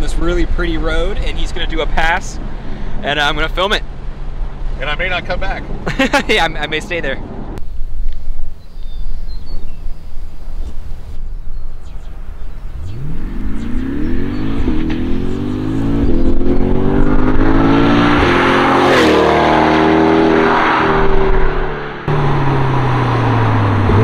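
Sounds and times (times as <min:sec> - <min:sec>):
car engine accelerating past: 0:12.7 - 0:24.0.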